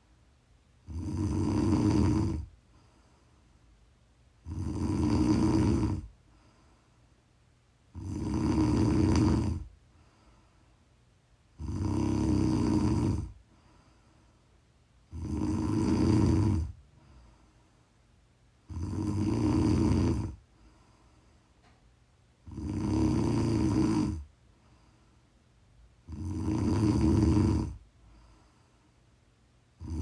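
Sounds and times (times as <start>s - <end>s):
woman snoring: 0.8s - 2.6s, 4.4s - 6.2s, 7.9s - 9.7s, 11.6s - 13.4s, 15.1s - 16.8s, 18.7s - 20.4s, 22.4s - 24.3s, 26.0s - 27.8s, 29.8s - 30.0s.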